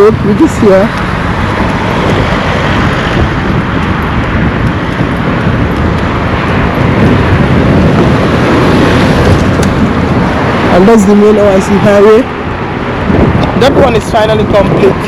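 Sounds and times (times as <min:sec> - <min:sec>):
road traffic passing: 0:00.0 - 0:15.0.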